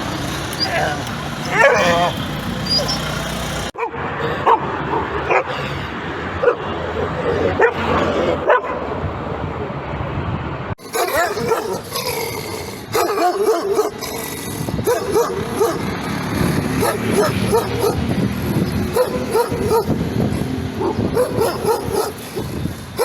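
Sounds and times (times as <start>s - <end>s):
dog barking sharply: 0.6s - 3.0s, 10.8s - 14.2s, 14.8s - 15.9s, 16.8s - 18.0s, 18.9s - 20.0s, 20.8s - 23.0s
dog yipping barks: 0.6s - 3.2s, 3.8s - 5.6s, 6.4s - 8.8s, 10.8s - 20.0s, 20.8s - 23.0s.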